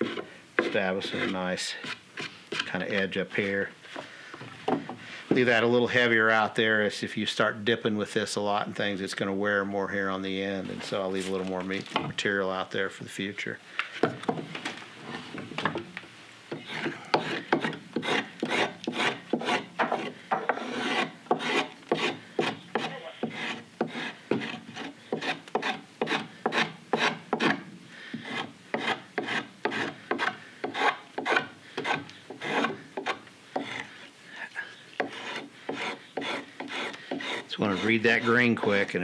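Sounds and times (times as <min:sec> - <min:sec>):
carving tool shaving wood: 0:00.0 - 0:02.8, 0:16.5 - 0:27.6, 0:28.2 - 0:34.1, 0:35.0 - 0:39.0.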